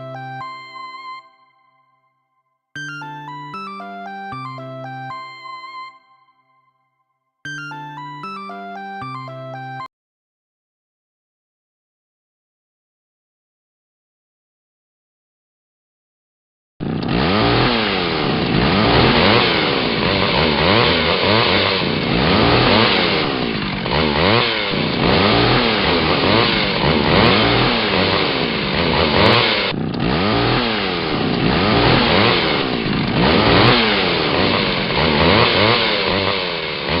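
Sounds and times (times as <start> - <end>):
chainsaw engine revving: 16.8 - 37.0.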